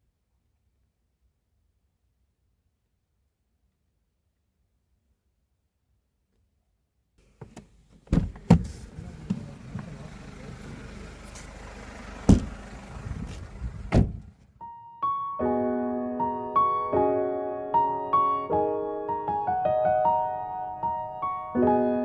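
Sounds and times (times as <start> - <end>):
dull thuds and knocks: 7.4 - 9.4, 12.3 - 12.6
soft electric piano music: 14.6 - 22.0.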